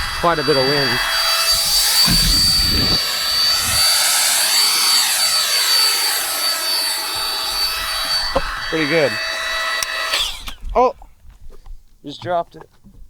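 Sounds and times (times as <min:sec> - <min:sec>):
low rumbling: 0:00.0 - 0:06.4
air pump rushing hiss: 0:00.0 - 0:10.6
pump motor whine: 0:00.0 - 0:10.6.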